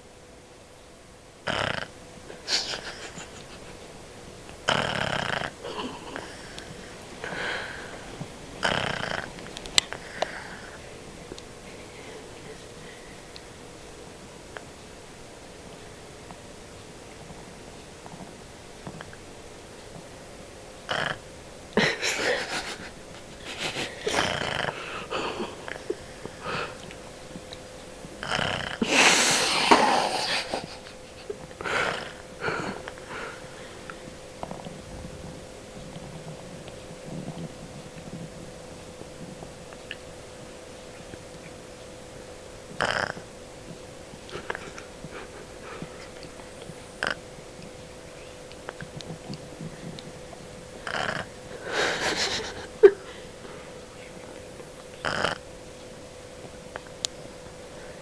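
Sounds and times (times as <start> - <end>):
dog snoring: 1.4 - 3.8, 4.6 - 10.8, 20.8 - 26.8, 28.2 - 38.4, 42.7 - 43.3, 44.2 - 47.2, 48.8 - 53.2, 54.2 - 55.4.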